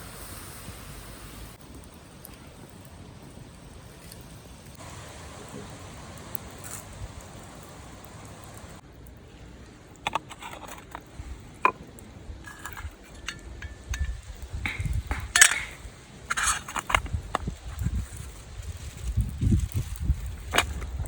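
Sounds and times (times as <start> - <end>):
steady hiss: 3.8 - 21.0
small hard objects clinking: 10.0 - 21.0.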